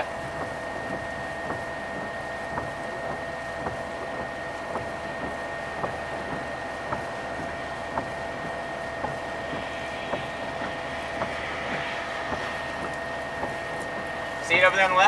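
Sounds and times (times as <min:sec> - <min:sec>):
vehicle cabin noise: 0:05.2 - 0:15.0
faint high whine: 0:09.2 - 0:15.0.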